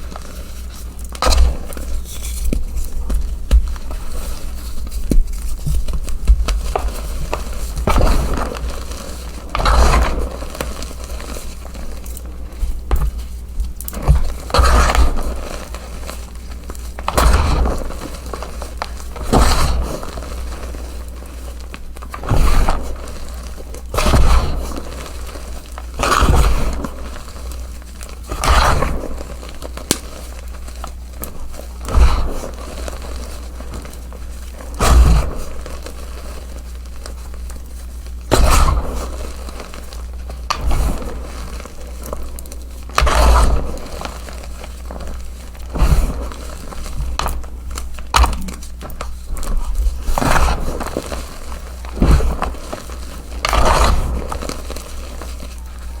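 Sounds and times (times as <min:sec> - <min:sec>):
chalk crunching: 0:00.0 - 0:56.0.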